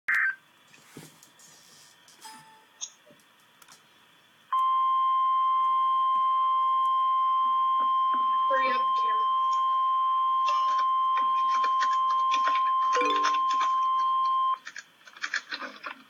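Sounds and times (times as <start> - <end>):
faint clicks and blips: 10.4 - 15.4
steady alert tone: 13.0 - 13.8.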